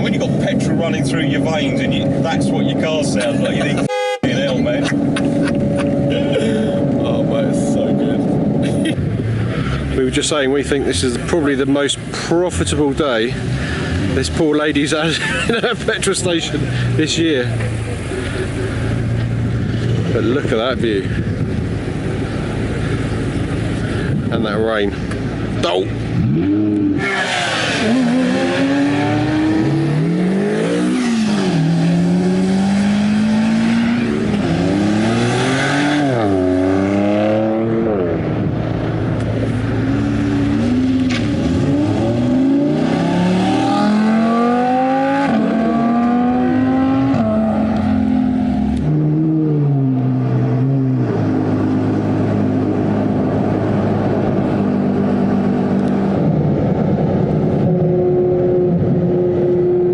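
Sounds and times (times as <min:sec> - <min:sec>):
car engine accelerating hard: 0:00.0 - 0:59.9.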